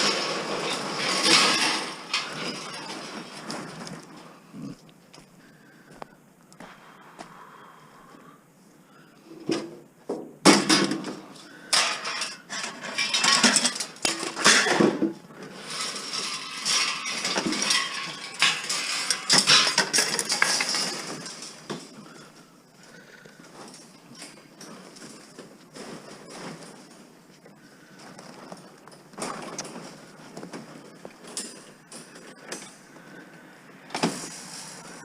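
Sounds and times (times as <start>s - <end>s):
scrap metal clanking and rattling: 0.0s - 4.3s, 10.5s - 22.3s.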